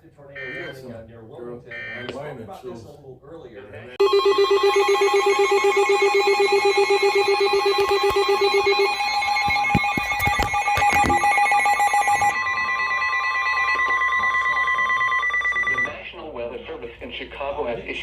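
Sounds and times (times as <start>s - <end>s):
rapidly pulsing alarm tone: 0.3s - 1.0s, 4.0s - 16.1s
steady alert tones: 4.0s - 16.0s.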